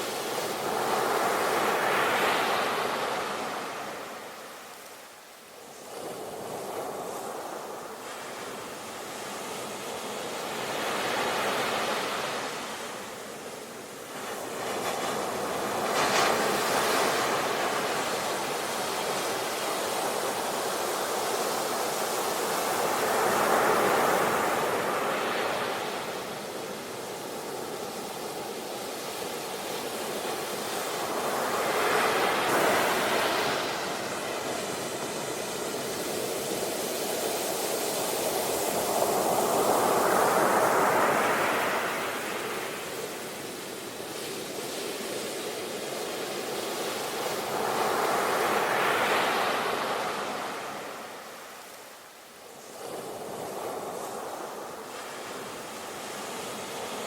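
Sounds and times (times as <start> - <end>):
sea waves washing onto shore: 0.0 - 57.0.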